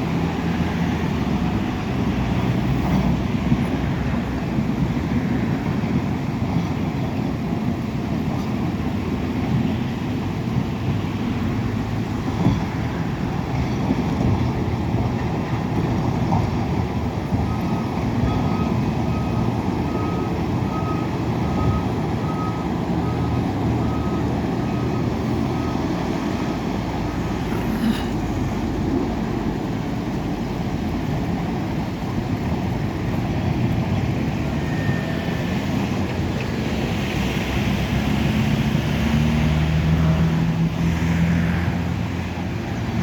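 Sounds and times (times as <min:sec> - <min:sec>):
diesel earthmoving machinery running: 0:00.0 - 0:43.0
reversing alarm beeping: 0:17.4 - 0:27.3, 0:34.4 - 0:35.7.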